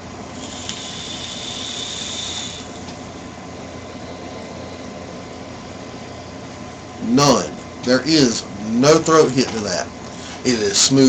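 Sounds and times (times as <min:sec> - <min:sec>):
vape hiss with high whistle: 0:00.3 - 0:02.9.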